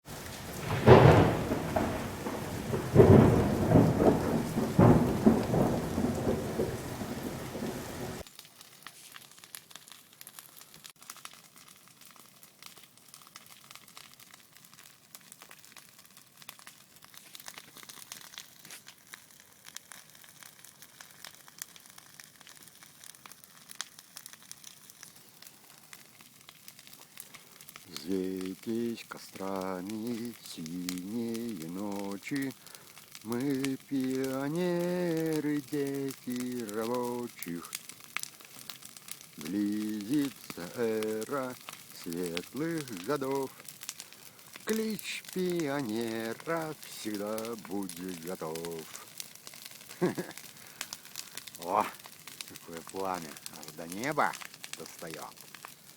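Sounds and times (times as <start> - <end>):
campfire crackling: 0.0 - 55.9
low booming rumble: 0.1 - 8.2.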